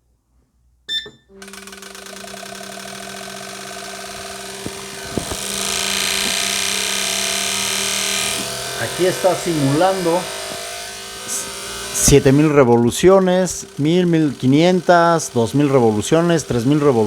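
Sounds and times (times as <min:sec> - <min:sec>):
steady electric buzz: 0:01.3 - 0:17.0
strong hiss: 0:04.0 - 0:12.5.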